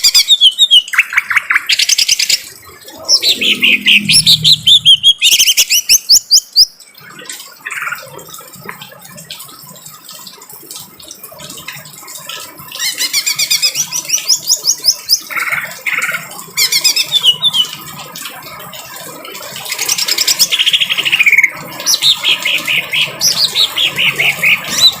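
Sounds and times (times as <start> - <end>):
bird rapid high chirping: 2.9 - 5.8.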